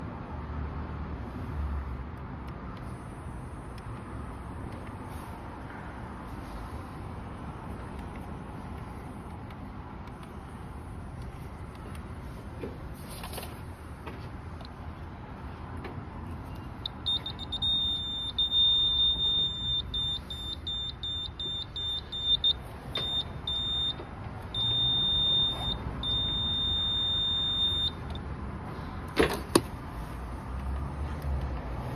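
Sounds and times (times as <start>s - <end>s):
laser level beeping: 16.4s - 28.0s.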